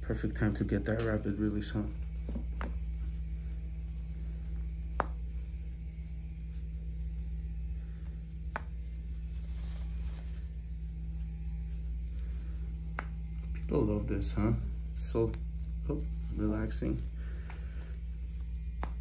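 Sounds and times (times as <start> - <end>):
vibration device humming: 0.0 - 19.0.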